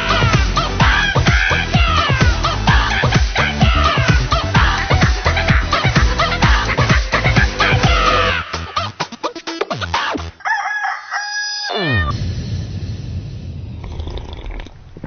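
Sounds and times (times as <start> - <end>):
music: 0.0 - 10.4
rooster crowing: 10.4 - 12.2.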